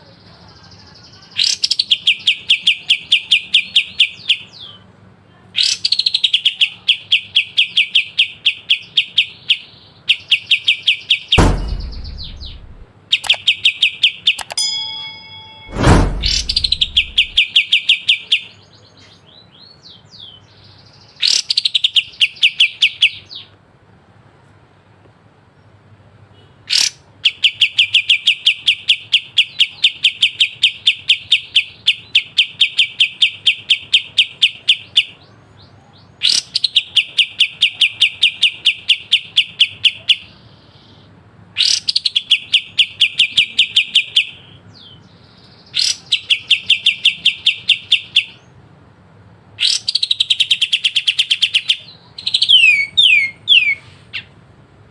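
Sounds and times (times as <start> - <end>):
bird singing rapid trill: 5.6 - 23.4, 49.6 - 54.3.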